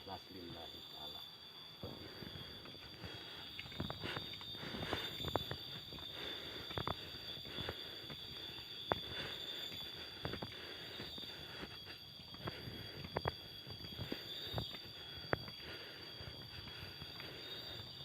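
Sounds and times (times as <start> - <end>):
high-pitched insect drone: 0.0 - 18.0
footsteps on stone stairs: 1.9 - 15.6.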